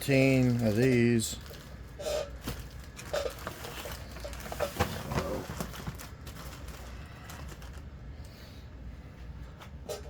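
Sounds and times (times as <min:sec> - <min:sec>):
firecracker packs clicking and knocking: 0:00.0 - 0:01.8, 0:02.4 - 0:07.9
low steady hum: 0:00.0 - 0:10.0.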